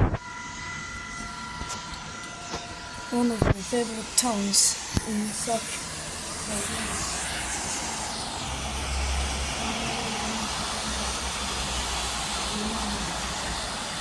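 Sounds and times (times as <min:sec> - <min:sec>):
warning siren high-low wail: 0:00.0 - 0:14.0.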